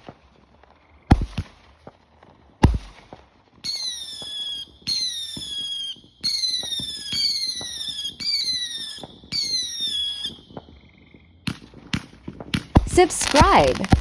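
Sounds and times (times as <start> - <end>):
firework bangs: 0.0 - 10.9, 11.5 - 14.0
shrieking firework whistles: 3.6 - 10.9, 12.8 - 14.0
small pops: 11.5 - 14.0.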